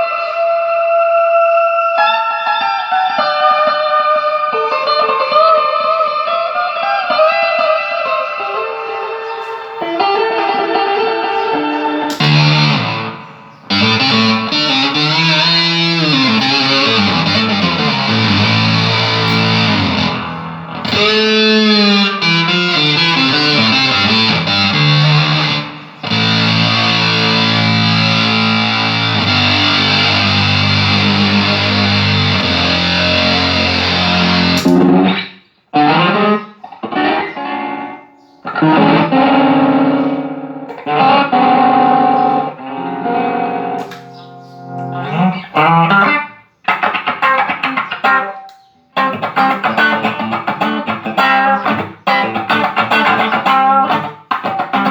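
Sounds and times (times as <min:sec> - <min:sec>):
electric guitar chords and notes: 0:01.9 - 0:54.9.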